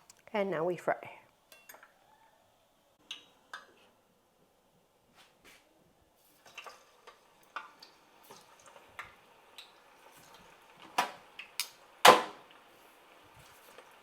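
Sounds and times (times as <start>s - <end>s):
faint frying sizzle: 0.0s - 14.0s
hot oil popping and spattering: 6.3s - 14.0s.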